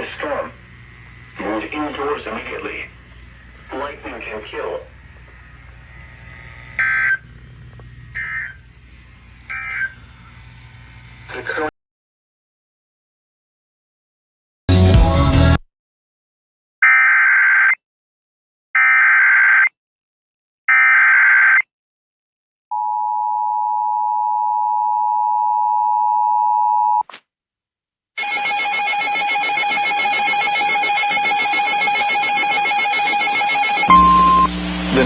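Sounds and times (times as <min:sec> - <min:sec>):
harsh noisy alert tone: 0:28.2 - 0:35.0
two-tone attention signal: 0:28.2 - 0:35.0.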